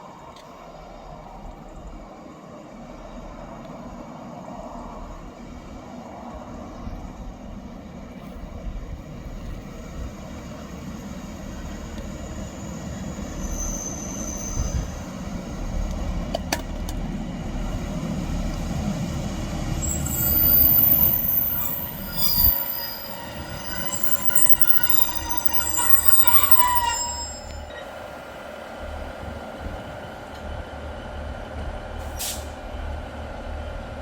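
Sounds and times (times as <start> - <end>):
train rumbling: 0.0 - 34.0
metallic squealing: 13.3 - 15.0, 19.8 - 27.7.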